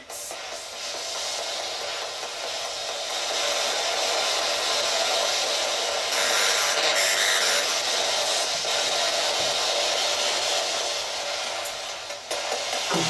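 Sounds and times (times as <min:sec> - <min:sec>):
radio static hiss: 0:12.6 - 0:13.0.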